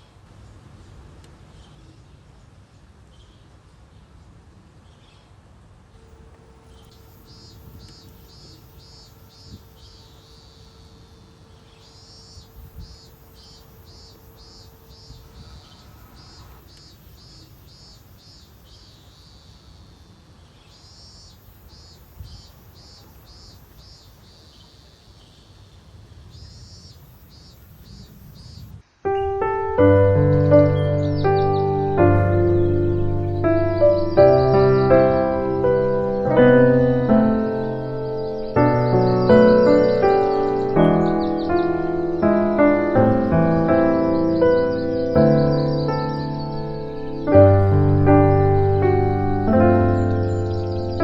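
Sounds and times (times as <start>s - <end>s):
insect chirping: 6.2s - 51.0s
faint low background rumble: 29.3s - 51.0s.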